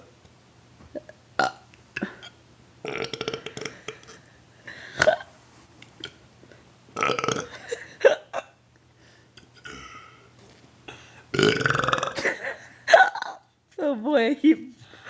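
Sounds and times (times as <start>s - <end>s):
man burping: 1.0s - 4.3s, 5.0s - 5.3s, 7.0s - 8.2s, 9.6s - 10.2s, 11.3s - 12.4s.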